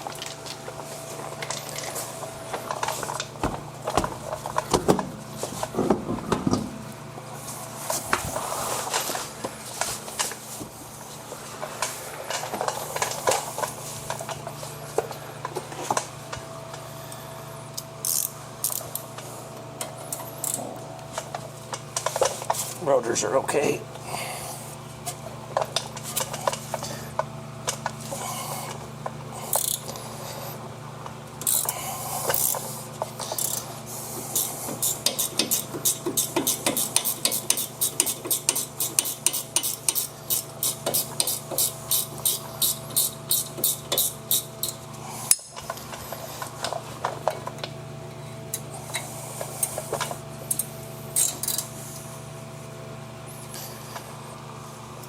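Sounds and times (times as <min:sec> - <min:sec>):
steady low hum: 0:00.0 - 0:55.0
hand ratchet clicking: 0:29.5 - 0:29.9, 0:31.4 - 0:33.6, 0:34.3 - 0:45.5, 0:50.5 - 0:51.7.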